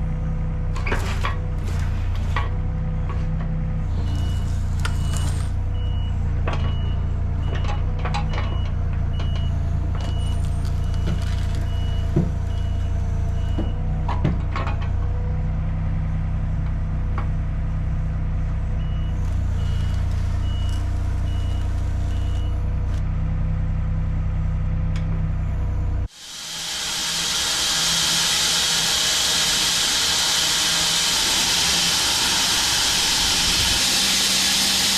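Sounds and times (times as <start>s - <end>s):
loud hissing: 26.1s - 34.9s
machine engine running: 26.1s - 34.9s.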